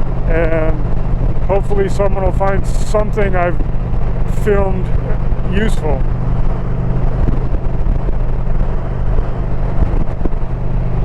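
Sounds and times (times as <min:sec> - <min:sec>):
motorcycle engine cruising: 0:00.0 - 0:11.0
wind and road noise: 0:00.0 - 0:11.0.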